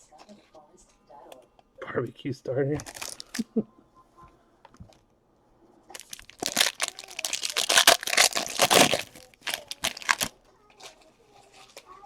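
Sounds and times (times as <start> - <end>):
wrapper crinkling: 2.8 - 3.4, 6.0 - 12.0.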